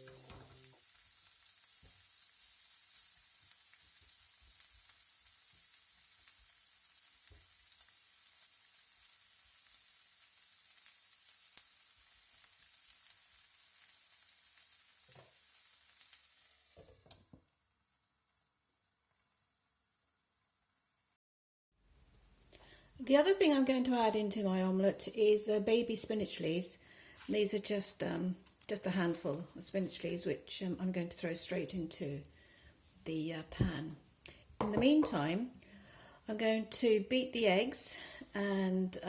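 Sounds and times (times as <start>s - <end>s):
vegetables sizzling in a frying pan: 0.0s - 21.1s, 22.7s - 39.0s
utensil tapping: 34.6s - 35.2s.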